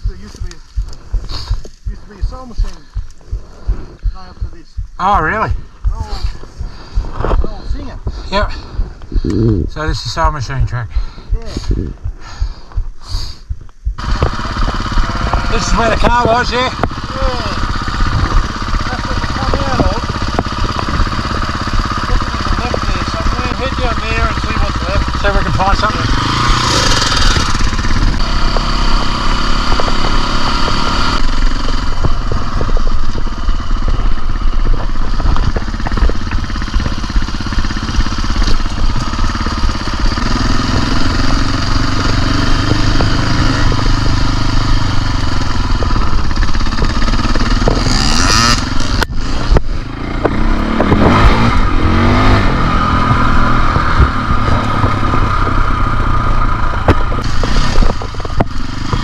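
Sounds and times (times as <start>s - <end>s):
dirt bike engine revving: 13.9s - 59.0s.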